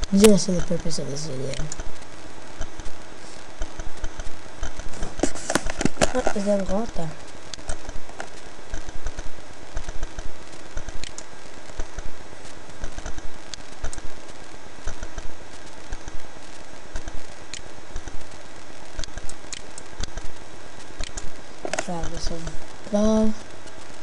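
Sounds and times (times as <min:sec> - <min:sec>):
low hum and hiss: 0:00.0 - 0:24.0
mouse and keyboard clicks: 0:07.6 - 0:11.3, 0:12.8 - 0:14.1, 0:14.8 - 0:15.3, 0:21.0 - 0:22.2.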